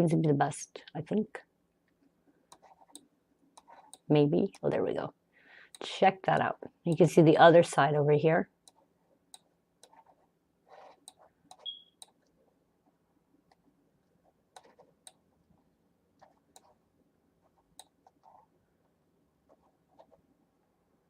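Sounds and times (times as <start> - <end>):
computer mouse clicks: 8.6 - 12.3, 14.5 - 15.2, 16.2 - 16.8, 17.8 - 18.4.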